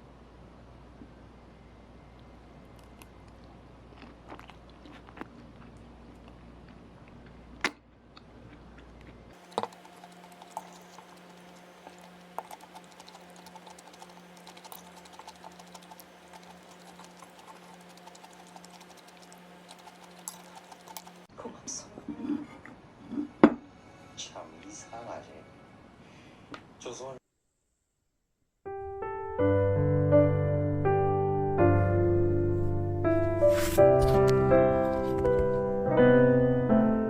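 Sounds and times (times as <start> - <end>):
low room hum: 0.0 - 28.5.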